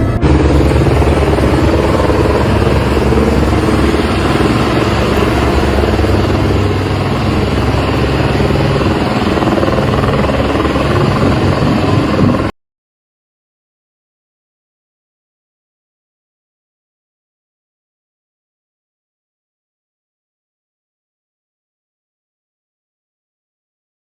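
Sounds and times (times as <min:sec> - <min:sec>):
engine-like rumble with flutter: 0:00.0 - 0:12.5.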